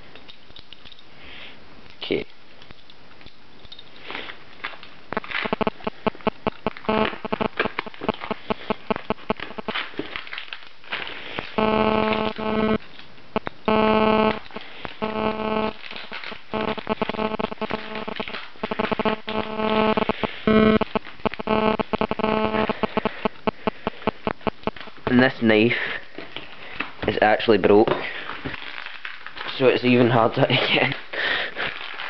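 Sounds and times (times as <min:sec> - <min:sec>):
short steady-pitch buzzes: 0:05.2 - 0:09.8, 0:11.5 - 0:12.8, 0:13.4 - 0:24.8.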